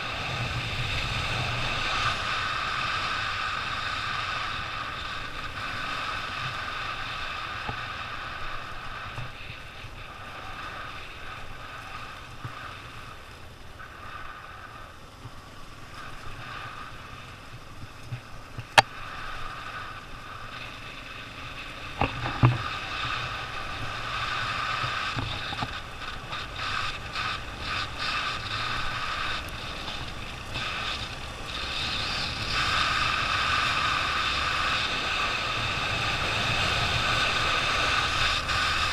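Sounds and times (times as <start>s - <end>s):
wind noise: 0.0s - 13.2s, 21.5s - 38.9s
motorcycle engine running: 15.2s - 38.9s.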